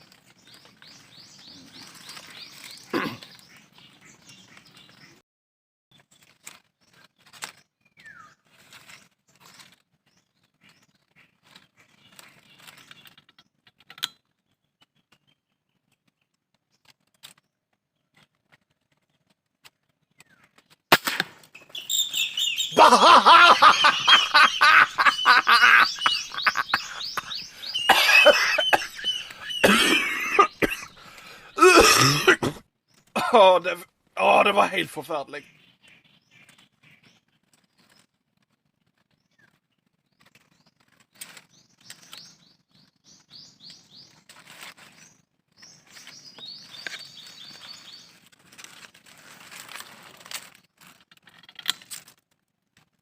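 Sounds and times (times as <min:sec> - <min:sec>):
faint clicks and rustles: 0:15.7 - 0:20.9, 0:36.4 - 0:42.3, 0:44.1 - 0:53.0
warbling bird calls: 0:21.6 - 0:32.3.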